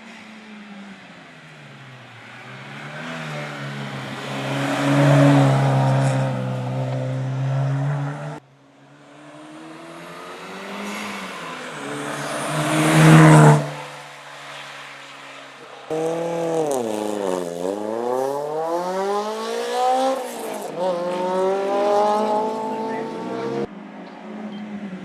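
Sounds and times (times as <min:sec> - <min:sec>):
second race car engine: 0:00.0 - 0:25.0
race car engine accelerating: 0:02.4 - 0:08.4, 0:09.4 - 0:14.0, 0:15.9 - 0:23.7.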